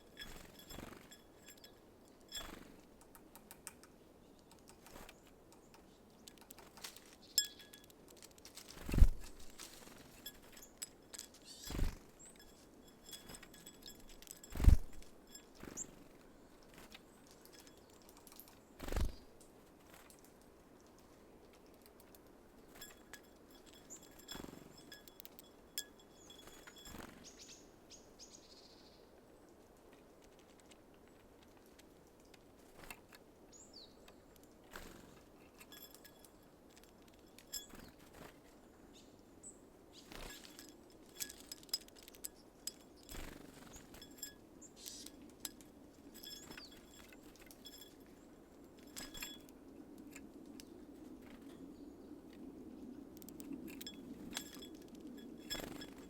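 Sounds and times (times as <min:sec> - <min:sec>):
birds tapping and pecking: 0:00.0 - 0:27.6, 0:29.5 - 0:39.1, 0:40.0 - 0:52.5, 0:53.1 - 0:56.0
faint high bird chirps: 0:07.1 - 0:07.9, 0:10.2 - 0:19.3, 0:22.7 - 0:29.1.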